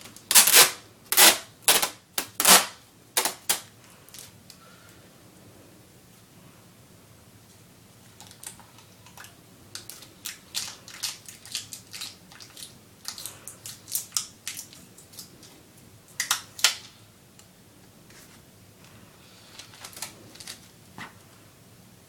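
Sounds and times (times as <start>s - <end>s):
adhesive tape pulled off roll: 0.3s - 3.6s.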